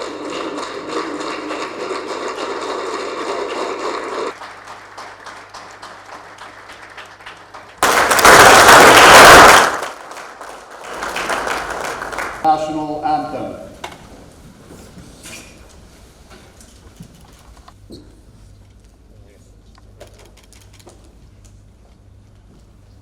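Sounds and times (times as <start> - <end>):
audience applauding: 0.0 - 12.5
loud burst of noise: 7.8 - 10.8.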